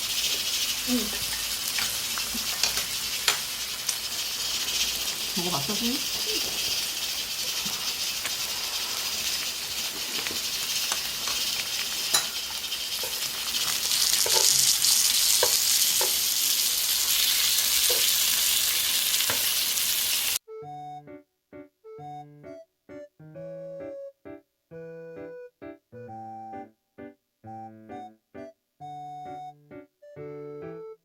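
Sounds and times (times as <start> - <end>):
meat sizzling on a pan: 0.0 - 20.4
light piano music: 20.5 - 31.0.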